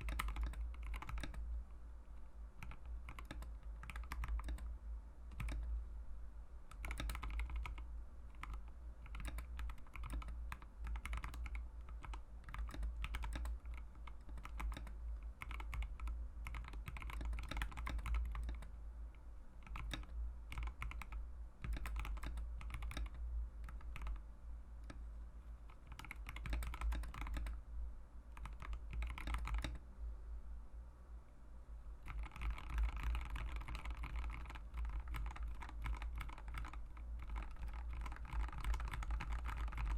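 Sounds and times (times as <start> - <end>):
mechanical keyboard typing: 0.0 - 1.4, 2.6 - 4.7, 5.3 - 5.7, 6.7 - 18.7, 19.6 - 24.2, 25.7 - 27.6, 28.3 - 29.8, 32.0 - 39.9
steady low hum: 0.0 - 39.9.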